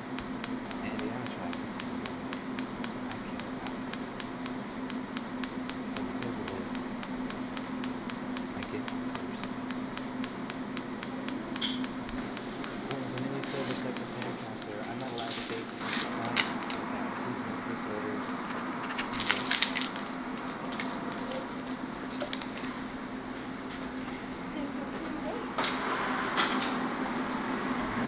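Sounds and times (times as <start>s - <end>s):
sharp clicks: 0.0s - 16.6s
low steady hum: 0.0s - 25.6s.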